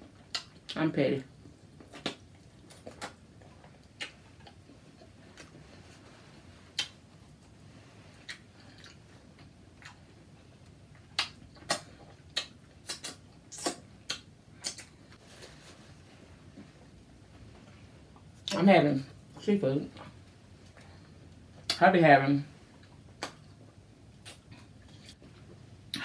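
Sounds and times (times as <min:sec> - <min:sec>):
mouth clicks and smacks eating: 0:00.1 - 0:00.8, 0:01.8 - 0:05.6, 0:06.7 - 0:07.0, 0:11.0 - 0:15.0, 0:24.2 - 0:26.0.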